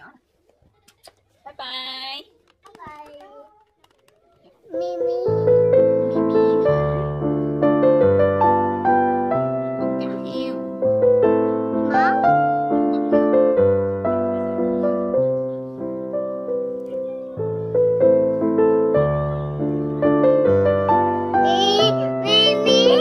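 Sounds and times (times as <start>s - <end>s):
gentle piano music: 4.7s - 23.0s.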